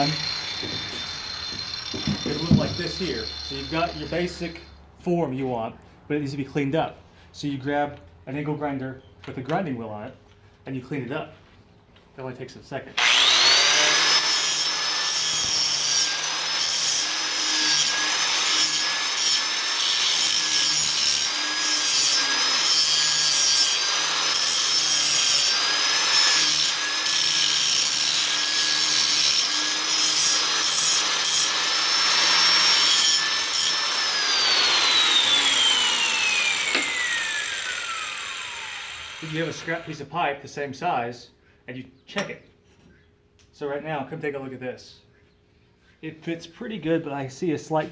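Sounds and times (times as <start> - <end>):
angle grinder grinding metal: 0.0 - 4.7, 13.0 - 40.0
grinder winding down: 0.0 - 4.7, 13.0 - 40.0.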